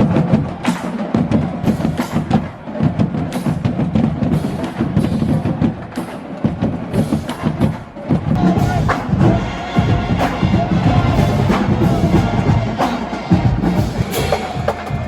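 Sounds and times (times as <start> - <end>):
sharp drum strokes: 0.0 - 15.0
bass drum hits: 8.4 - 15.0.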